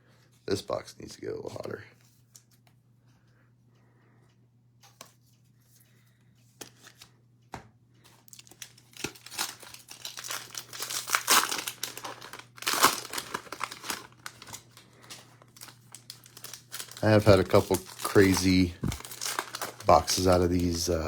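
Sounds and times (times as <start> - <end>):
cellophane crinkling and tearing: 8.1 - 21.0.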